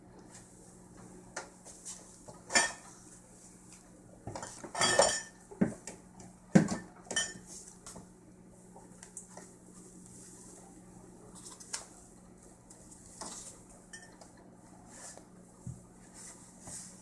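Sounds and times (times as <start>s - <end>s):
containers clinking in refrigerator: 4.3s - 5.8s.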